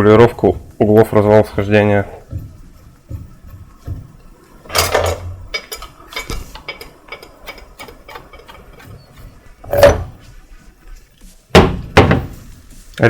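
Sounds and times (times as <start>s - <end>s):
loud metallic clank: 4.7s - 8.6s
metal tools clinking: 4.7s - 10.0s.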